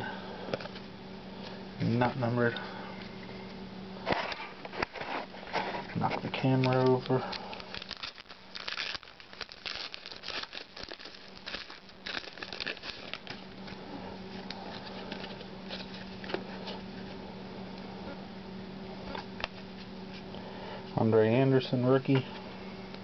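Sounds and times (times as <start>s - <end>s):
cards handled: 4.1s - 16.9s
foil wrapper crinkling and tearing: 4.7s - 16.8s.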